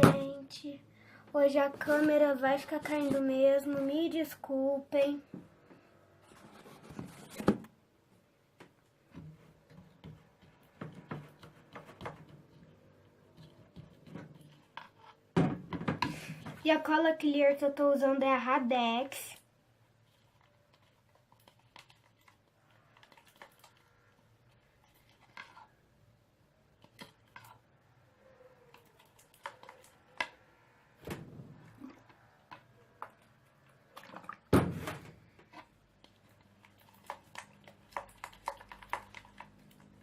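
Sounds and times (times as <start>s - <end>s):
slime clicking and squelching: 19.9s - 25.6s, 35.6s - 40.0s.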